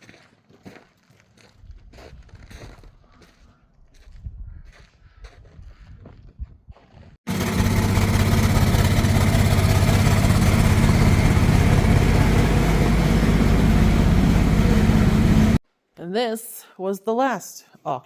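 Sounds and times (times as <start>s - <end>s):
riding mower engine running: 7.3s - 15.6s.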